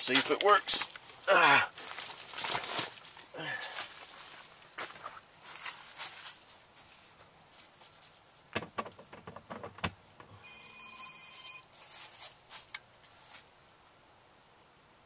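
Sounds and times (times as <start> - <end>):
sharp clicks and knocks: 8.5 - 10.4
electronic beep: 10.4 - 11.6.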